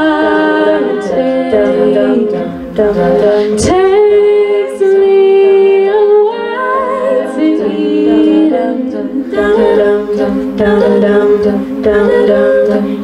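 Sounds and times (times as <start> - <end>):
a cappella group singing harmonies: 0.0 - 13.0.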